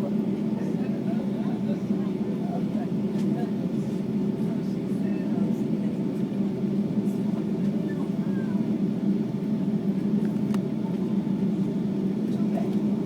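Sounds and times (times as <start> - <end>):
aircraft cabin rumble while taxiing: 0.0 - 13.0.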